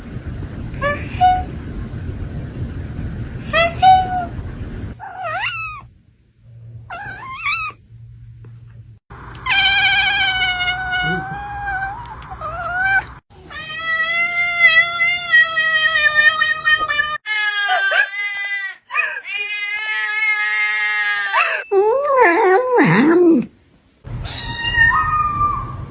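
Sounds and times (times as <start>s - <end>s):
cats meowing and yowling: 5.0s - 5.9s, 6.9s - 7.8s, 9.4s - 23.1s, 24.2s - 25.9s.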